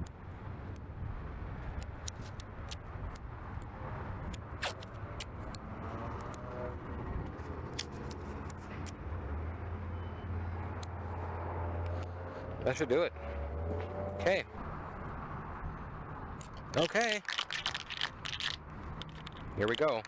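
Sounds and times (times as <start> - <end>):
masking tape tearing: 4.6 - 5.0, 16.8 - 19.4.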